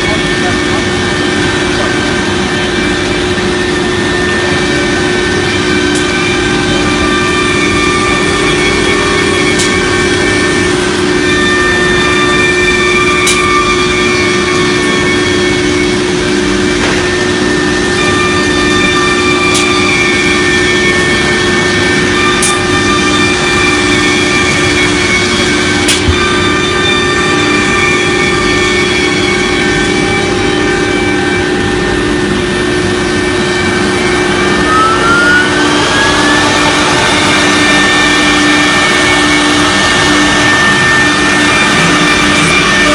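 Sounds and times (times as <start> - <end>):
cnc router drone and whine: 0.0 - 42.9.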